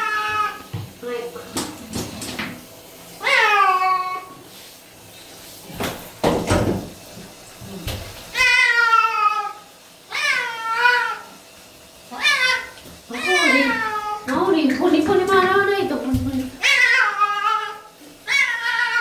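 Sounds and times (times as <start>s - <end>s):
cat meowing loudly: 3.2s - 4.4s, 8.3s - 11.3s, 12.2s - 14.3s, 16.6s - 19.0s.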